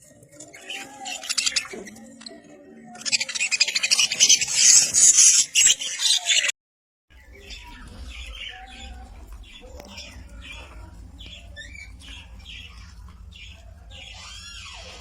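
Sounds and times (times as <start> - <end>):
budgerigars chirping: 3.1 - 6.5, 7.2 - 15.0
low steady hum: 7.1 - 15.0.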